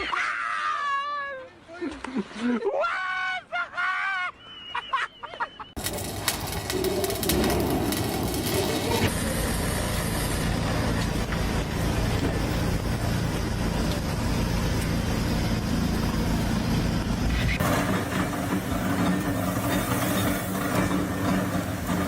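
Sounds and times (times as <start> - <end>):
running machinery with engine hum: 5.8 - 22.0.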